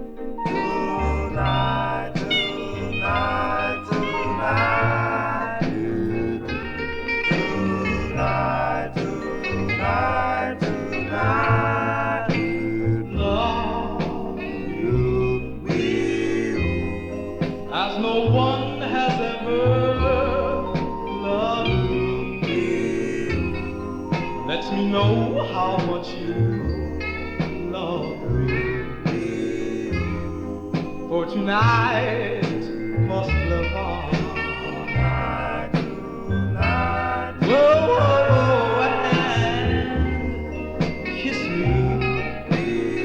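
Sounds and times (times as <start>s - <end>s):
band with walking bass line: 0.0s - 43.0s
group harmony singing: 0.0s - 43.0s.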